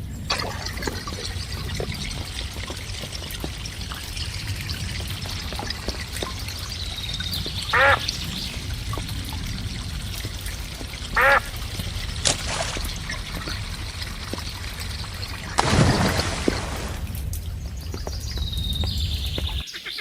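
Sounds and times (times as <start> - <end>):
rushing splash: 0.0 - 17.7
running water: 0.0 - 19.7
duck quacking: 7.7 - 8.1, 11.2 - 11.5.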